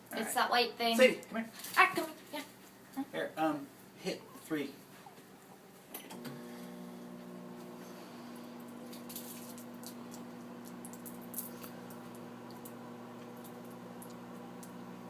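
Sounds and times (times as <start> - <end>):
microwave oven humming: 6.0 - 15.0.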